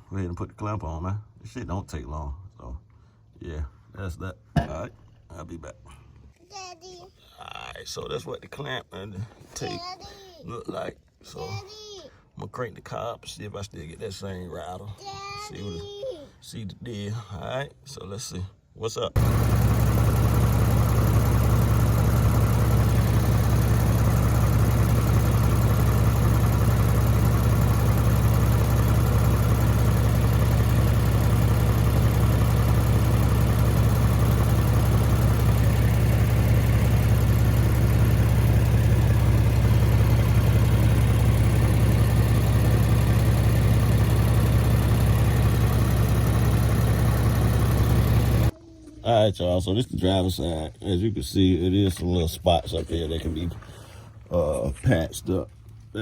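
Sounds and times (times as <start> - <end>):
car engine idling: 19.2 - 48.5.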